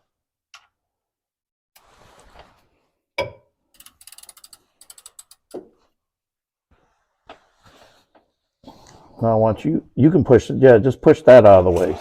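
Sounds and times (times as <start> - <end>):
rubbing and handling noise: 1.8 - 3.0, 11.4 - 12.0.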